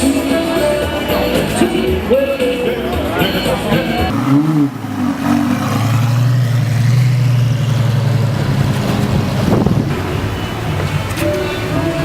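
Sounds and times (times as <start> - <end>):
car engine revving: 3.6 - 12.0.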